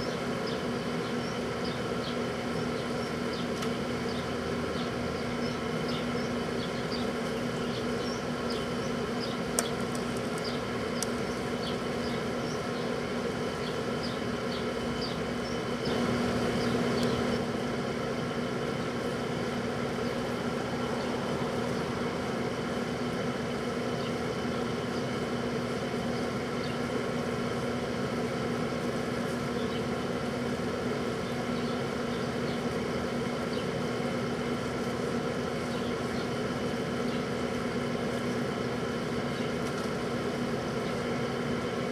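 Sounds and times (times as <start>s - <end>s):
microwave oven humming: 0.0s - 41.9s
faint high chirping ticks: 16.6s - 17.4s.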